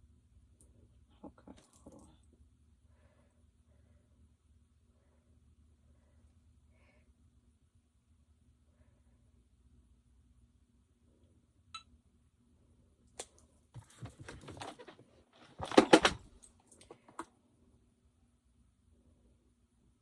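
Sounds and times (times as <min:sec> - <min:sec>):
clattering: 0:13.8 - 0:17.2.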